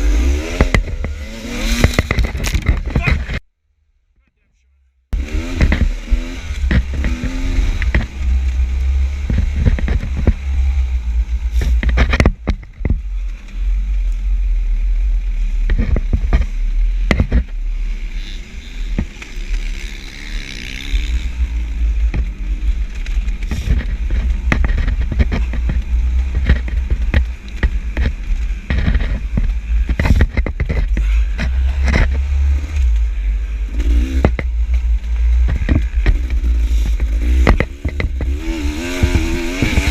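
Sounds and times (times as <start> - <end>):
dirt bike engine revving: 0.0 - 3.4, 5.1 - 12.0, 17.3 - 39.9
knocks and rattles: 0.0 - 3.4, 5.5 - 10.8, 11.5 - 13.1, 20.8 - 39.9.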